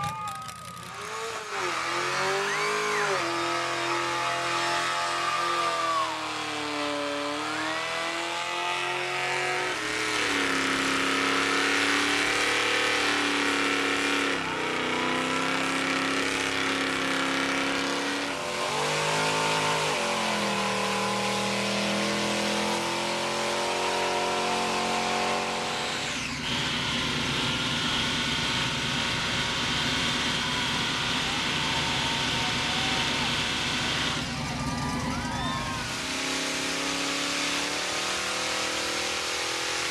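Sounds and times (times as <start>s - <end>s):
car engines revving: 0.0s - 39.9s
rough low engine rumble: 25.3s - 36.8s.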